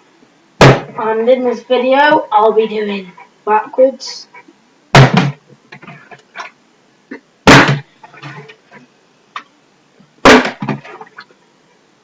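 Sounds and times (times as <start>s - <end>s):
plastic bottle thudding down: 0.6s - 1.0s, 5.0s - 5.9s, 7.5s - 8.4s, 10.2s - 11.1s
knocks and handling sounds: 5.0s - 6.6s.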